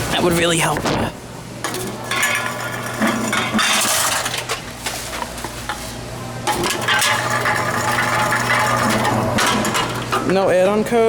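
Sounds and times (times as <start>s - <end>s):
containers clinking and clattering: 6.5s - 10.3s.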